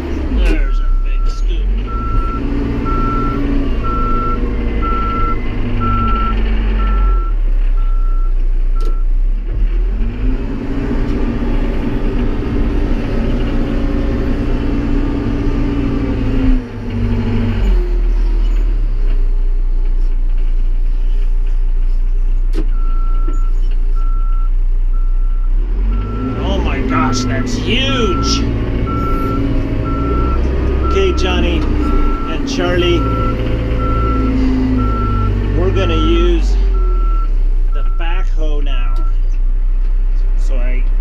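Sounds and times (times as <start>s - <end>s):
tractor engine under load: 0.0s - 9.9s, 10.6s - 41.0s
reverse alarm beeping: 0.7s - 9.0s, 22.7s - 36.1s.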